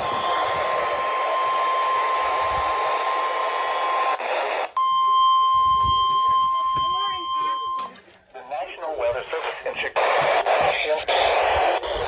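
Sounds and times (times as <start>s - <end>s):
radio hiss: 0.0s - 4.8s, 8.4s - 12.0s
steady high alarm tone: 4.8s - 7.9s.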